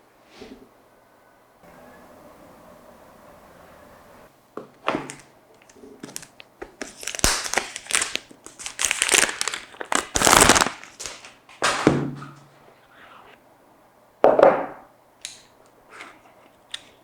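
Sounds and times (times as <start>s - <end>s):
packaging crinkling and tearing: 5.1s - 11.9s.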